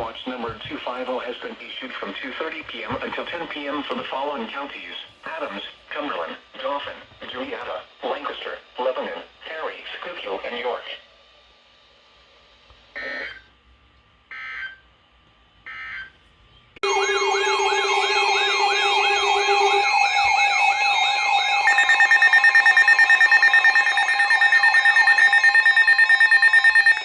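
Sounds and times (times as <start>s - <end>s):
digital data bursts: 16.8s - 27.0s
warbling alert tone: 16.8s - 27.0s.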